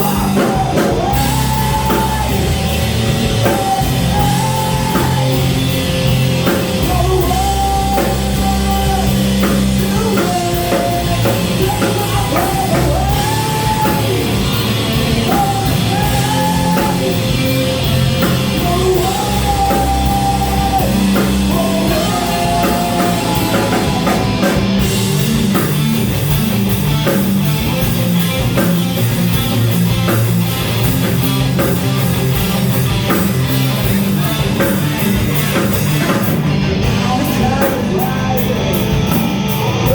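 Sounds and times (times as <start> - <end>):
person singing: 0.0 - 25.8, 33.8 - 39.9
live rock band playing: 0.0 - 39.9.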